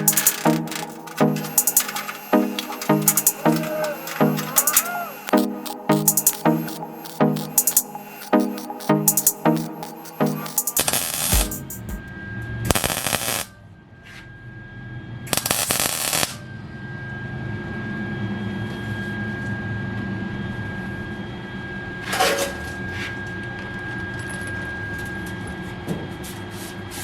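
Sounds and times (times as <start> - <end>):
welder bursts: 0.0 - 12.0, 12.7 - 13.5, 15.3 - 16.4
steady hum: 0.0 - 13.2.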